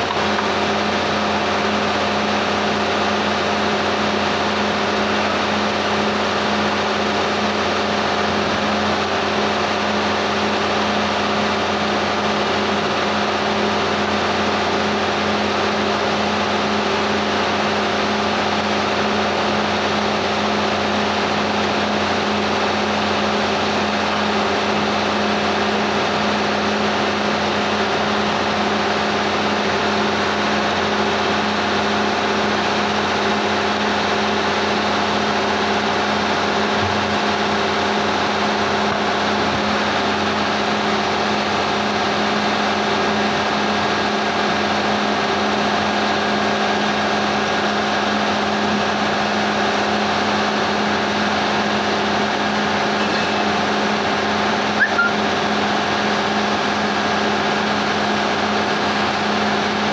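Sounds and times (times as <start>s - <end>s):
engine running steadily: 0.0s - 59.9s.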